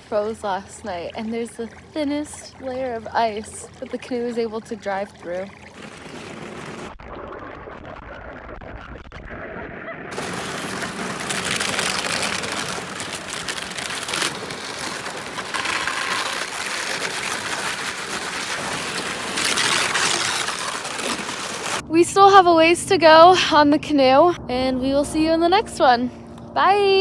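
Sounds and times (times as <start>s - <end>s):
thin ice crackling and tinkling: 10.1s - 21.8s.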